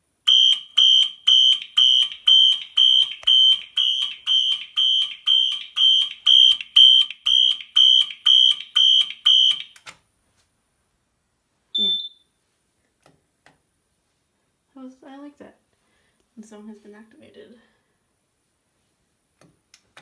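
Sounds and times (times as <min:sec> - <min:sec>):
fire alarm horn pulsing: 0:00.3 - 0:09.8.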